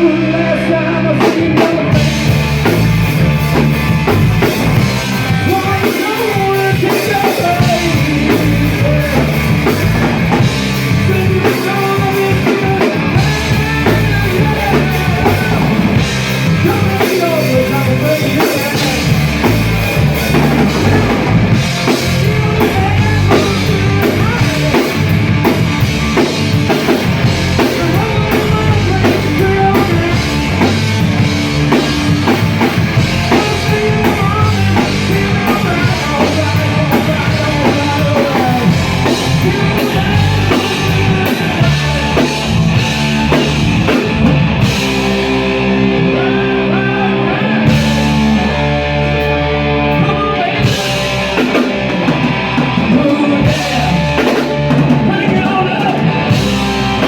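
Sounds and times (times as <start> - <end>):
person singing: 0.0 - 3.0, 4.7 - 57.0
live rock band playing: 0.0 - 57.0.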